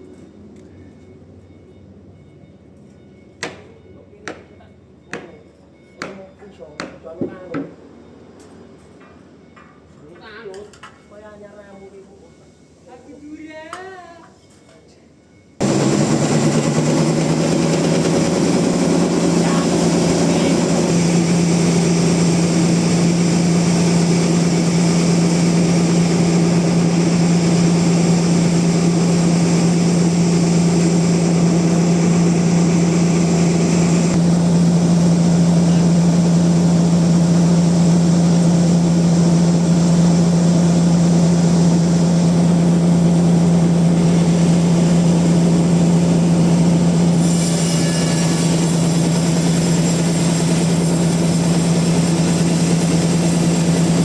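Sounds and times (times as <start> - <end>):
band sawmill droning: 15.6 - 54.0.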